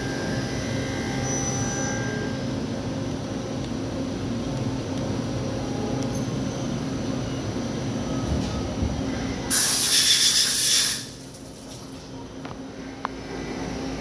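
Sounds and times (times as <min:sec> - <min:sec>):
loud hiss: 0:09.5 - 0:11.2.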